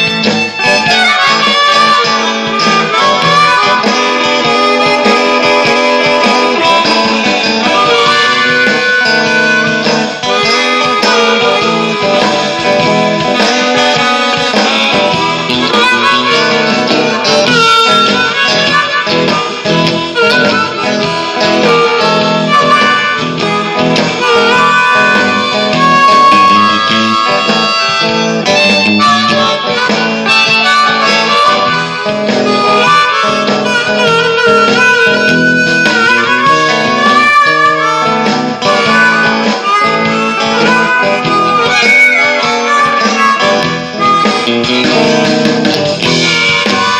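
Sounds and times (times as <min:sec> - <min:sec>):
bluesy harmonica: 0:00.0 - 0:46.9
guitar accompaniment: 0:00.0 - 0:46.9.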